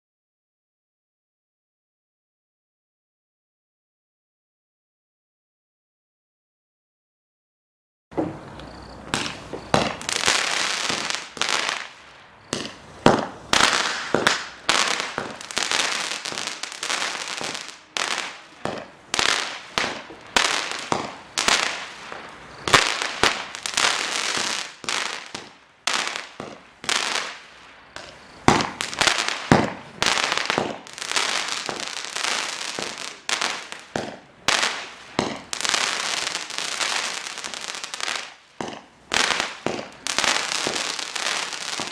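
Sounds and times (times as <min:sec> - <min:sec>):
fireworks bangs: 0:08.1 - 0:41.9
fireworks crackling: 0:08.2 - 0:41.9.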